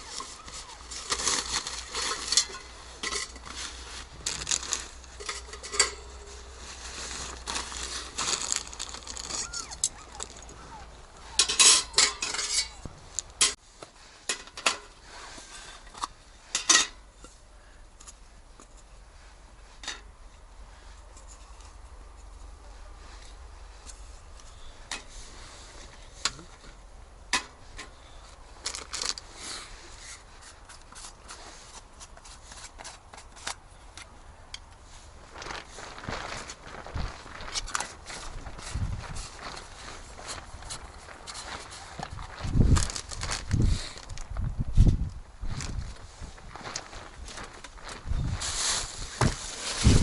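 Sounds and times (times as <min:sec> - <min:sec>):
objects clinking and knocking: 0:11.3 - 0:12.8.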